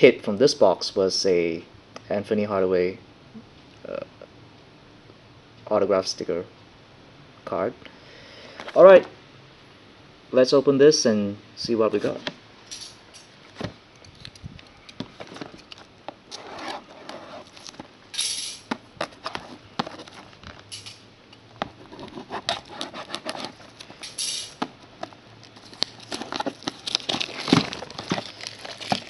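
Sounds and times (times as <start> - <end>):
plastic wrap crinkling: 13.9 - 18.0, 21.6 - 29.0
tearing rustles: 14.0 - 17.9, 21.7 - 29.0.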